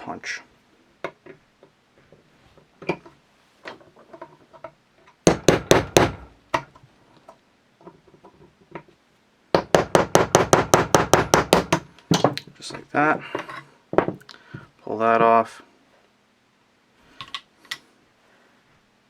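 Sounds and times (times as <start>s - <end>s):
hammer striking metal punch: 5.3s - 6.7s.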